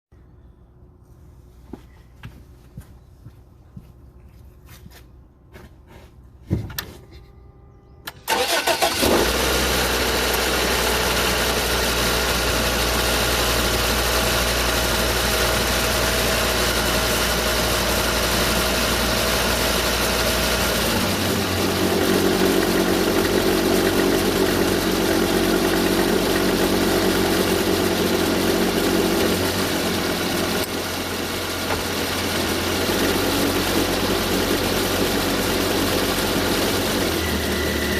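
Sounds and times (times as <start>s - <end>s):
car engine starting and idling: 8.0s - 37.9s.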